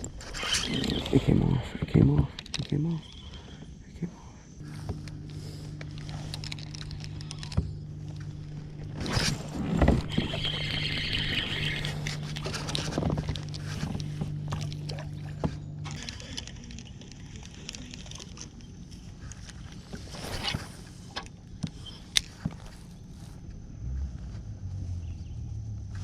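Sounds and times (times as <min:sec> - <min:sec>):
steady low hum: 0:00.0 - 0:26.0
kayak handling noises: 0:04.6 - 0:23.5.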